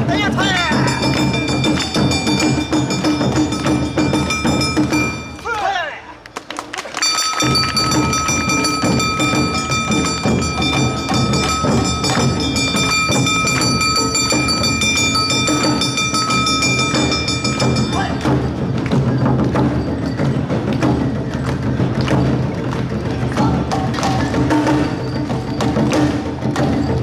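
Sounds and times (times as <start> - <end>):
drums beating: 0.0 - 5.8, 6.5 - 27.0
festival band playing: 0.0 - 5.8, 6.8 - 27.0
high held note: 7.3 - 18.2.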